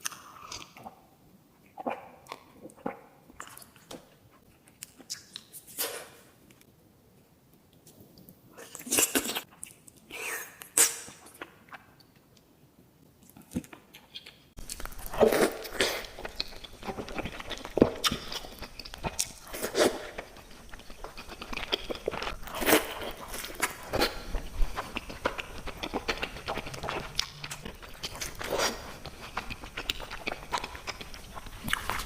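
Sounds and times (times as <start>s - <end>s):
crunchy chewing of sweets: 13.2s - 32.0s.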